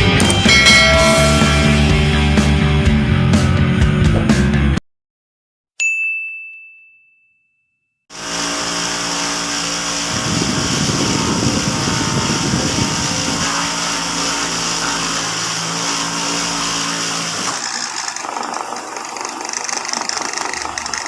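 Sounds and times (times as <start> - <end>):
sewing machines running: 8.1 - 21.0.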